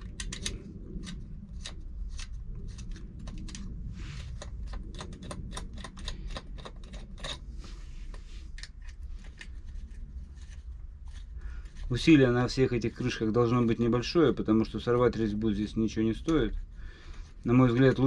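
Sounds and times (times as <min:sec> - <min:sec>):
small metallic clicks: 0:00.0 - 0:03.7, 0:04.3 - 0:07.4.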